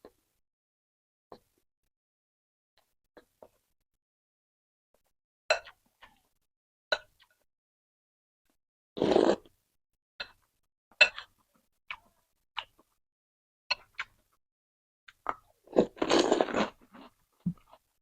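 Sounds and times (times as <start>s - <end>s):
slurping soup: 9.0s - 9.5s, 15.7s - 17.2s.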